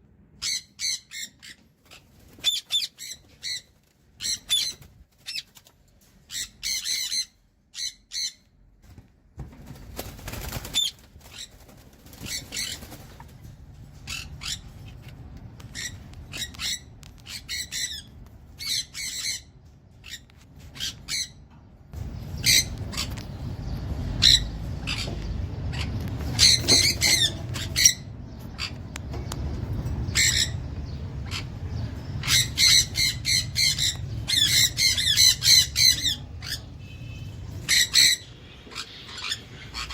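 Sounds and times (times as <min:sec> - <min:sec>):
small parrots squawking: 0:00.4 - 0:05.5, 0:06.3 - 0:08.5, 0:14.0 - 0:15.0, 0:15.6 - 0:21.4, 0:22.2 - 0:29.0, 0:30.0 - 0:39.9
steady low rumble: 0:13.2 - 0:39.9.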